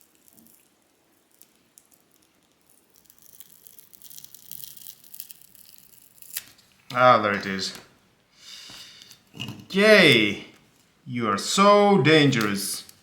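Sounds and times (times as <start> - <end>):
small parts scratching and crackling: 0.0 - 6.7.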